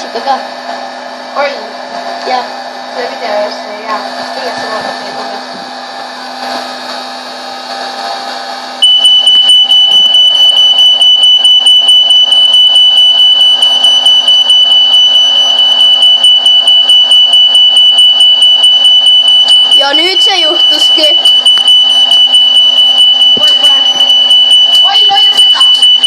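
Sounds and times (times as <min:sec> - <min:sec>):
appliance hum: 0:00.0 - 0:26.0
smoke detector alarm: 0:08.6 - 0:26.0.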